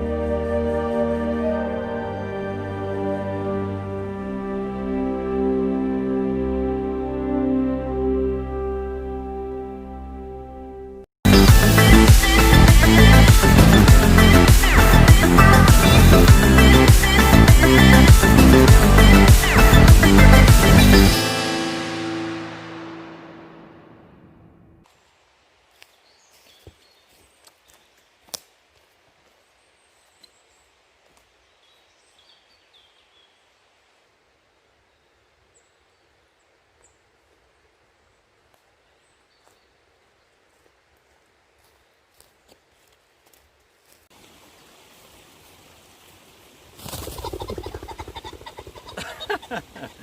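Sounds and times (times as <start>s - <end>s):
pheasant wingbeats whirring: 46.6s - 49.9s.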